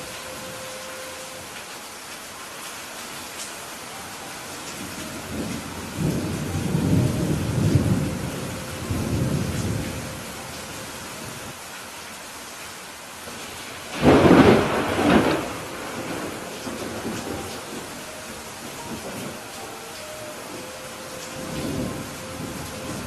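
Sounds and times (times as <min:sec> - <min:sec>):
steady rain hissing: 0:00.0 - 0:23.0
rolling thunder rumble: 0:04.8 - 0:11.5, 0:13.9 - 0:23.0
sharp thunderclap cracking: 0:13.9 - 0:17.8.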